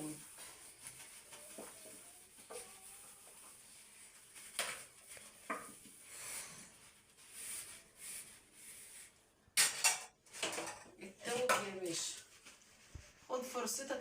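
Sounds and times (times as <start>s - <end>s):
soft rustling: 0.0s - 9.2s, 11.2s - 14.0s
dishes clinking: 9.6s - 11.7s.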